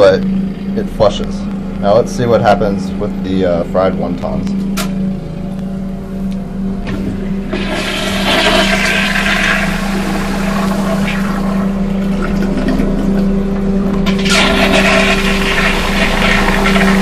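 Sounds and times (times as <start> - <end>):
lawn mower engine droning: 0.0 - 17.0
toilet flushing: 6.9 - 17.0.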